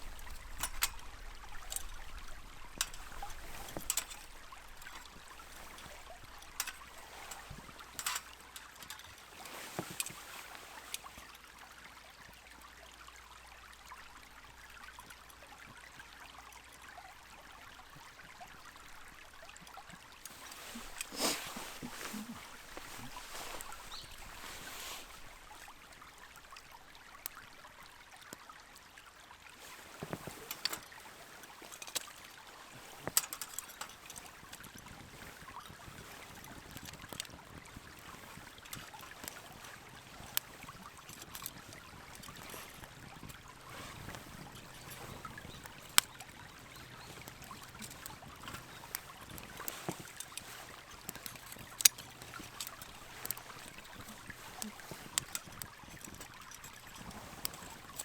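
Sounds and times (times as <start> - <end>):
campfire crackling and popping: 0.0 - 11.3, 18.8 - 27.4, 29.6 - 58.0
soft steady hiss: 0.0 - 58.0.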